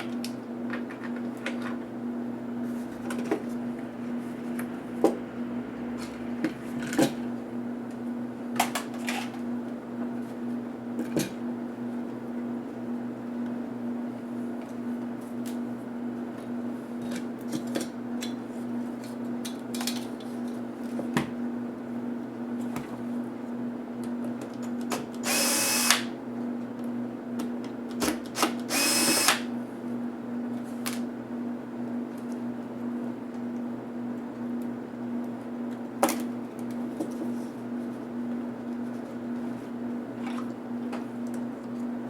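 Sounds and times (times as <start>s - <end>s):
steady low hum: 2.1s - 8.9s
electric screwdriver whirring: 25.2s - 26.1s, 28.4s - 29.5s.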